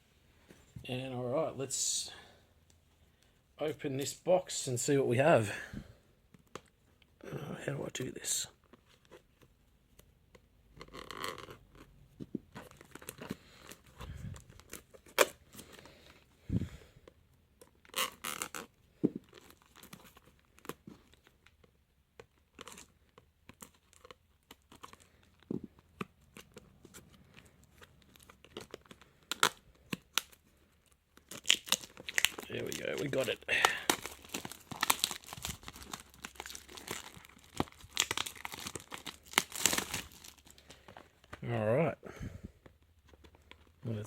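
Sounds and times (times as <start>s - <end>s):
packaging tearing and scraping: 31.2s - 40.9s.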